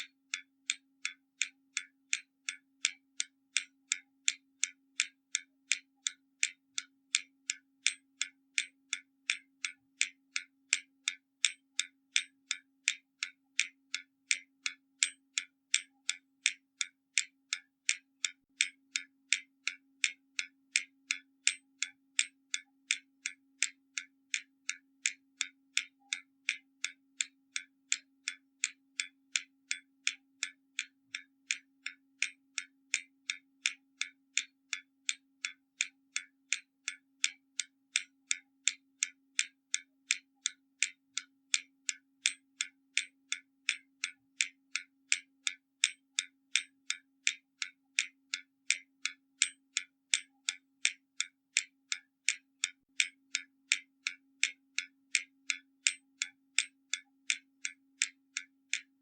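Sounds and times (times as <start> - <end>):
clock ticking: 0.0 - 58.9.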